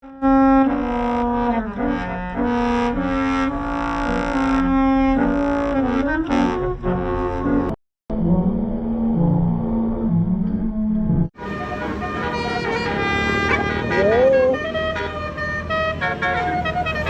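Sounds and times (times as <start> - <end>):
musical air horn playing a tune: 0.0 - 7.8, 11.4 - 17.0.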